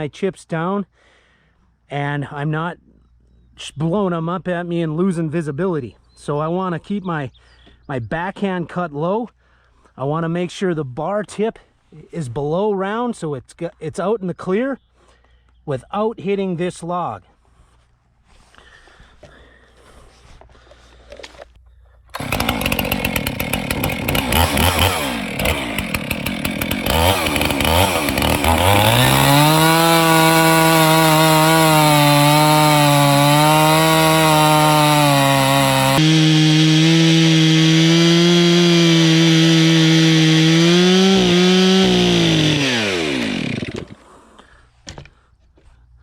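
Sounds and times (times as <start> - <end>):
chainsaw cutting log: 22.1 - 44.1.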